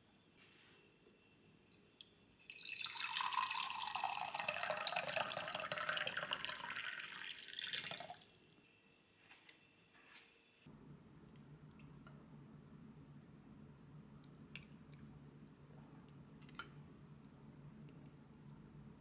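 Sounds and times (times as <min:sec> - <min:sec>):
water running from a tap: 0:02.4 - 0:08.3.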